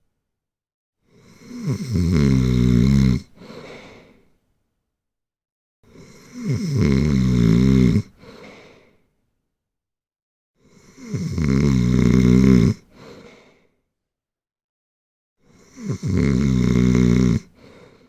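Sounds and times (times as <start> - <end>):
person snoring: 1.1 - 4.1, 5.9 - 8.9, 10.6 - 13.2, 15.5 - 18.0
soft breath: 3.4 - 4.4, 8.2 - 9.1, 12.9 - 13.8, 17.5 - 18.0.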